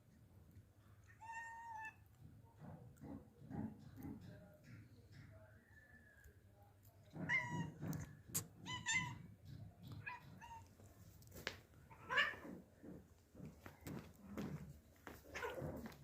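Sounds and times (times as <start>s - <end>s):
cat meowing: 1.1s - 2.0s, 8.6s - 9.2s, 10.0s - 10.7s, 11.9s - 12.5s.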